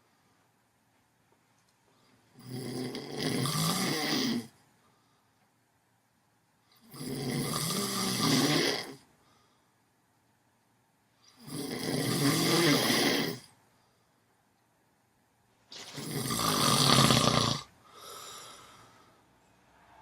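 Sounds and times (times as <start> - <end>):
loud snoring: 2.4 - 4.5, 6.8 - 9.0, 11.4 - 13.5, 15.8 - 18.6
soft breath: 9.1 - 9.9, 17.8 - 20.0.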